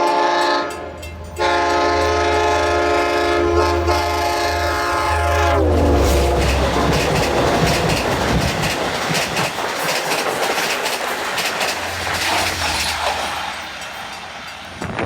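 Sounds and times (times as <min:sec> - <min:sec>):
deep locomotive engine rumble: 0:00.0 - 0:15.0
train wheels rushing on rails: 0:00.0 - 0:15.0
clickety-clack over rail joints: 0:04.8 - 0:15.0.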